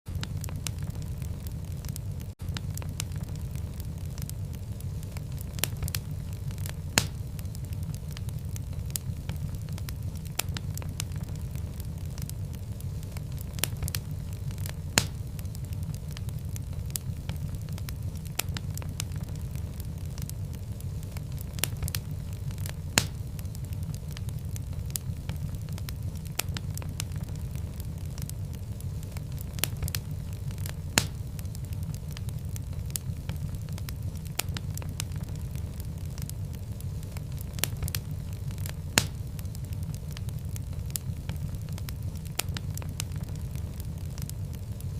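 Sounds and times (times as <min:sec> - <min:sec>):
low rumble of flames: 0:00.1 - 0:44.9
wood fire crackling and popping: 0:00.1 - 0:44.9.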